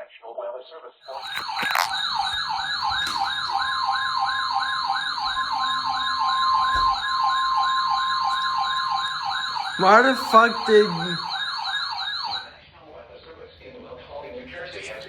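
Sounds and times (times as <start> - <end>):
fast yelping siren: 1.1 - 12.6
steady alarm tone: 1.1 - 12.6.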